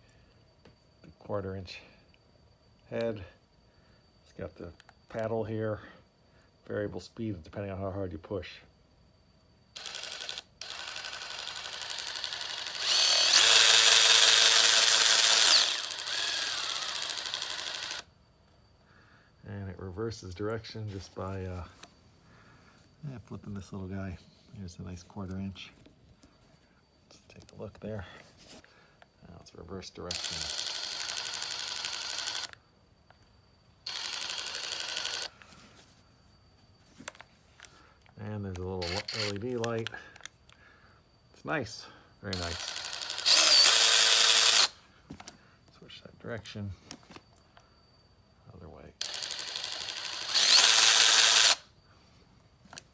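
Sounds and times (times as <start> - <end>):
cordless ratchet whining: 9.8 - 18.1, 30.1 - 32.6, 33.9 - 35.3, 38.8 - 39.8, 42.3 - 44.8, 49.0 - 51.7.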